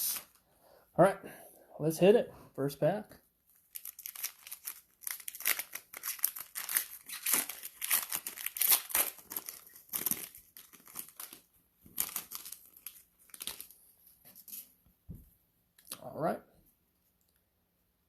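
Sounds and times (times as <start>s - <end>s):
cellophane wrapper crinkling: 3.5s - 14.7s.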